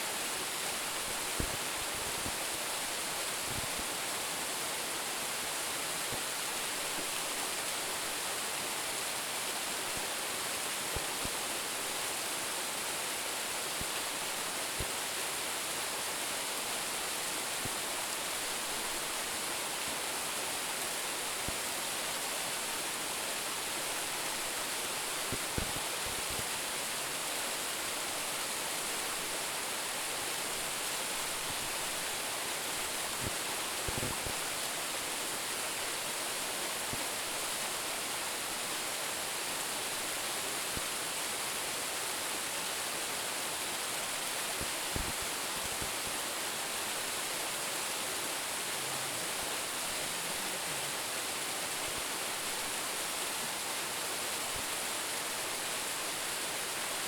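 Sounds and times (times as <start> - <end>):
waterfall rushing: 20.2 - 57.0.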